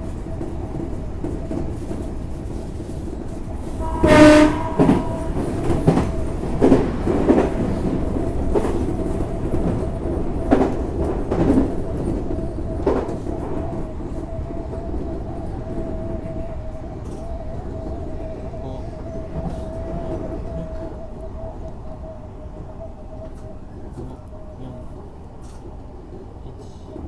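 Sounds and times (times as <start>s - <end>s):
electric train whine: 0.0s - 27.0s
train horn blast: 3.7s - 6.8s.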